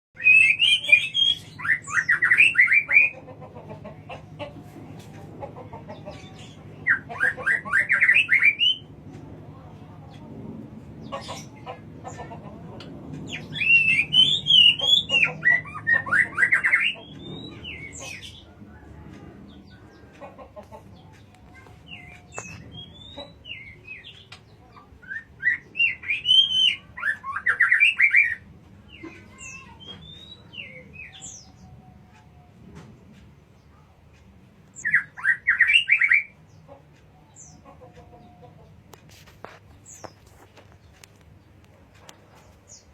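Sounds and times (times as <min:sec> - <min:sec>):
bird warbling song: 0:00.2 - 0:03.2, 0:13.3 - 0:18.9, 0:19.5 - 0:32.1
steady low hum: 0:00.2 - 0:27.5
soft bird calls: 0:10.9 - 0:42.9.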